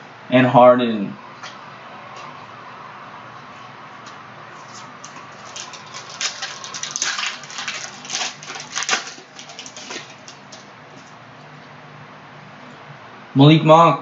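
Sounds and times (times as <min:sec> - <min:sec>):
cards rustling: 0:04.6 - 0:11.2
foil wrapper crinkling and tearing: 0:04.6 - 0:11.2.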